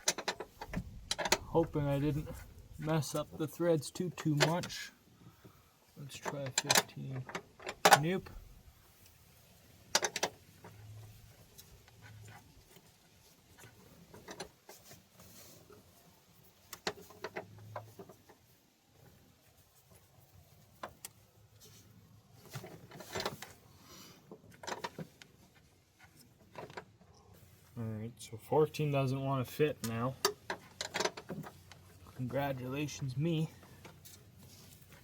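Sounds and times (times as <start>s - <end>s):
wrenches clinking on metal bolt: 0.0s - 2.2s, 4.1s - 4.9s, 6.1s - 8.4s, 29.8s - 33.0s.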